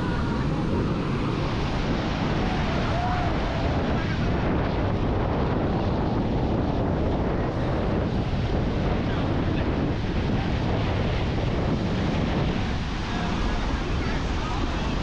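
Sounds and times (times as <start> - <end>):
heavy surf breaking: 0.0 - 15.0
wind buffeting microphone: 0.0 - 15.0.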